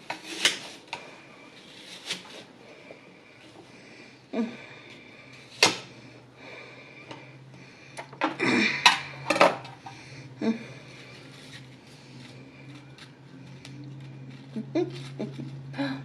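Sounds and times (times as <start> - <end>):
knife scraping: 0.0 - 0.9, 1.5 - 2.5.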